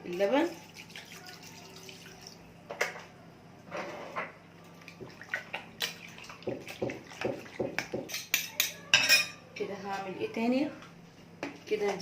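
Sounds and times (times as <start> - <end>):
milk pouring into a bowl: 0.2 - 2.4.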